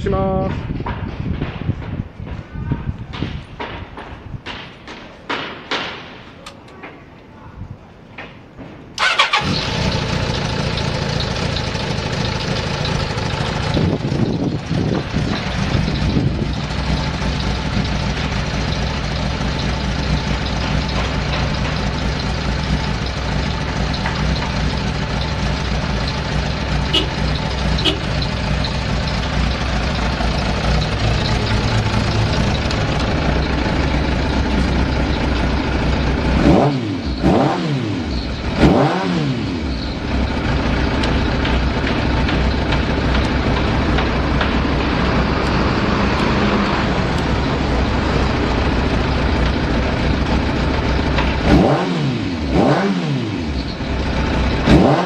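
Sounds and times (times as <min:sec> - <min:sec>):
motorcycle engine idling: 0:09.0 - 0:37.3, 0:39.6 - 0:52.7, 0:53.4 - 0:55.0
engine throttle blips: 0:09.0 - 0:55.0.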